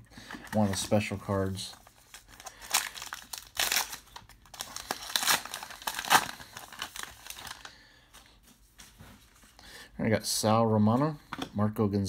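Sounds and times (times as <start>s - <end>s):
wrapper crinkling and tearing: 0.4s - 7.7s.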